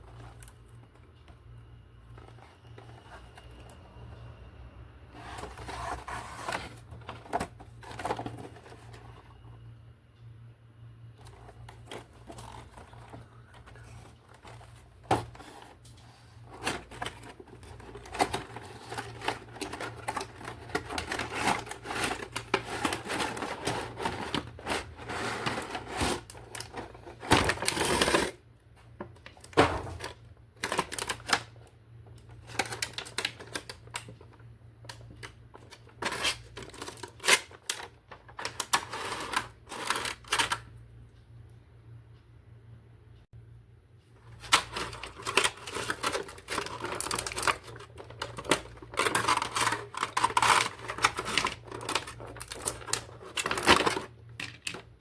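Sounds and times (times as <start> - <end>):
packaging rustling: 5.1 - 9.2, 11.3 - 28.4, 29.2 - 31.6, 32.3 - 34.3, 34.9 - 40.6, 44.2 - 55.0.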